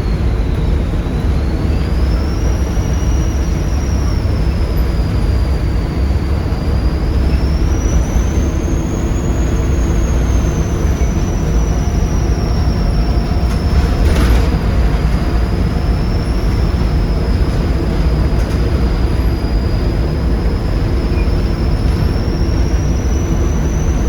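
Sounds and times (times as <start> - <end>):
diesel bus engine droning: 0.0 - 24.0
turbocharger whistle: 0.0 - 24.0.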